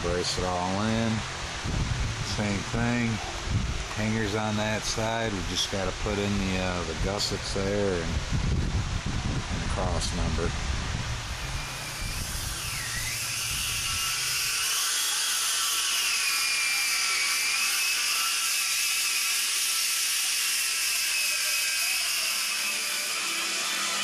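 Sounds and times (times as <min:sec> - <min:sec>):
continuous hiss: 0:00.0 - 0:24.0
high-pitched power tool whine: 0:10.9 - 0:24.0.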